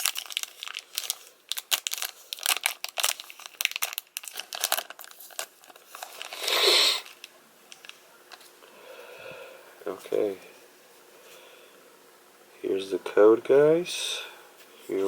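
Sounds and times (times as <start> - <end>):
plastic wrapper crinkling: 0.0 - 8.5
wrapper tearing rustle: 0.0 - 8.5.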